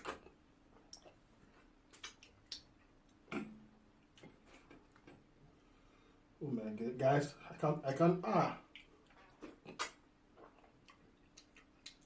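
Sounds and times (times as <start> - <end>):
mouth clicks and smacks eating: 0.0 - 5.3, 8.6 - 12.0.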